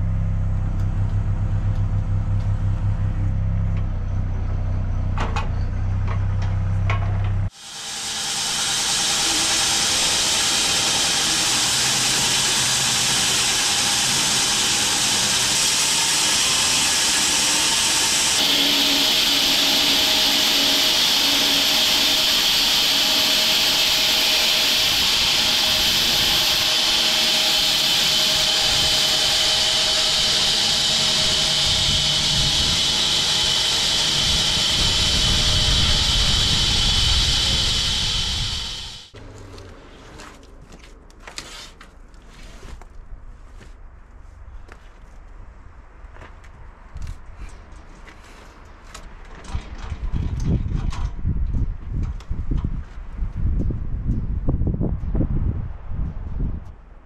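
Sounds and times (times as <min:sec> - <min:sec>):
low machine hum: 0:00.0 - 0:40.1
bandsaw blade sawing log: 0:07.5 - 0:39.2.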